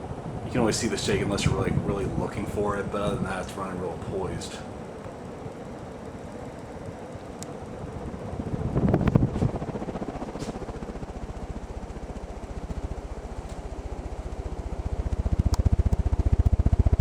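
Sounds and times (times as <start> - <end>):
wind gust on microphone: 0.0 - 4.8, 7.9 - 10.7
ceiling fan wind rumble: 0.0 - 17.0.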